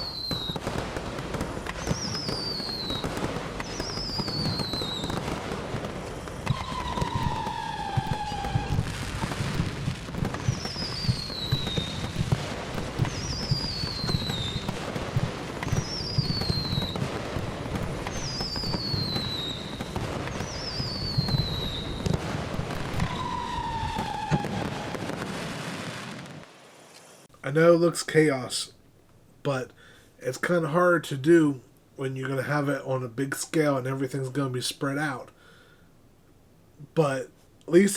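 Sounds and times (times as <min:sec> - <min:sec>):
falling firework whistle: 0:00.0 - 0:26.5
fireworks crackling and popping: 0:00.0 - 0:27.3.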